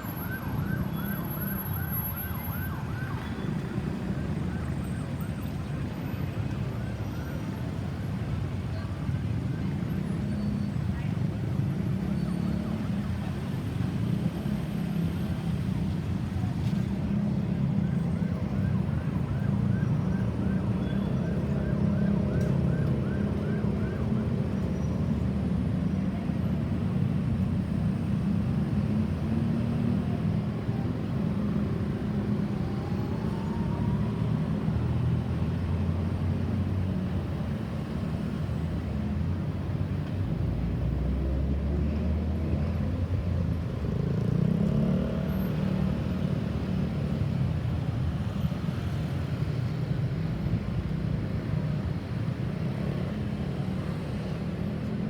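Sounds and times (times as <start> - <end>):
emergency vehicle siren yelping: 0.0 - 5.6, 18.0 - 24.6, 30.6 - 35.1
heavy road traffic: 0.0 - 55.0.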